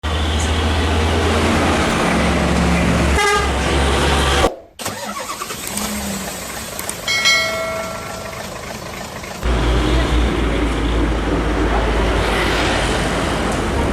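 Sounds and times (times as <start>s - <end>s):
heavy trucks passing: 0.0s - 4.5s, 5.6s - 13.9s
quieter traffic: 0.0s - 13.9s
truck horn toot: 3.1s - 4.5s.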